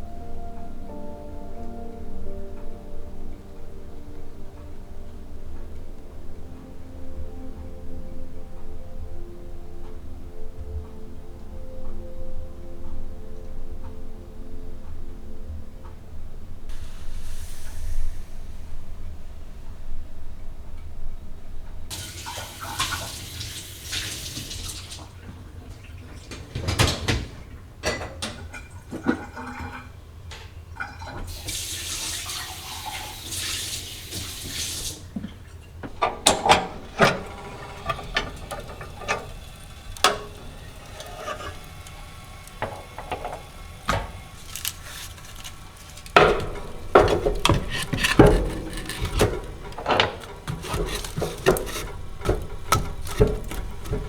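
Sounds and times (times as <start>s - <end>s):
kitchen tap running: 21.9s - 26.9s, 30.8s - 54.0s
dishes and utensils clinking: 26.0s - 31.6s, 34.1s - 54.0s.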